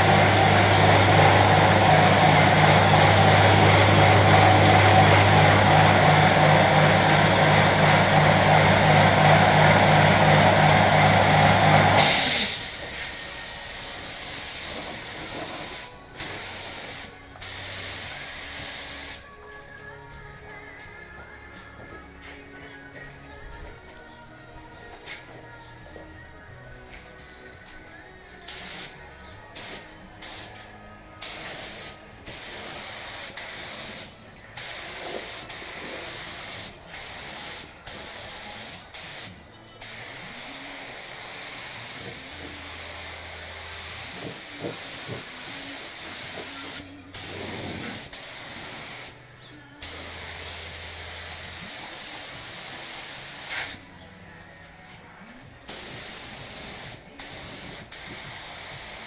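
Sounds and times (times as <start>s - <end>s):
paint spray gun hissing: 0.0s - 19.3s, 28.5s - 29.0s, 29.6s - 30.6s, 31.2s - 49.2s, 49.8s - 53.8s, 55.7s - 59.0s.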